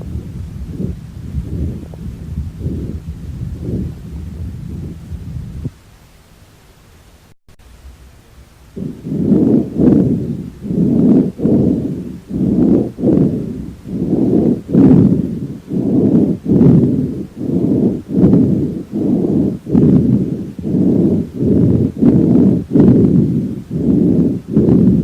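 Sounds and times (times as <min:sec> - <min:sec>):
horse breathing through stethoscope: 0:08.8 - 0:25.0.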